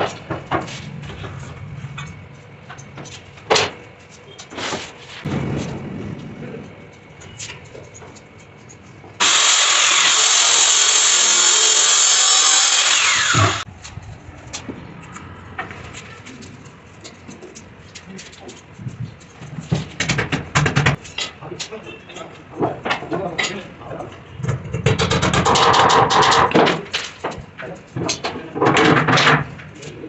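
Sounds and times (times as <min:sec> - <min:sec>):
power tool running: 0:09.2 - 0:13.7.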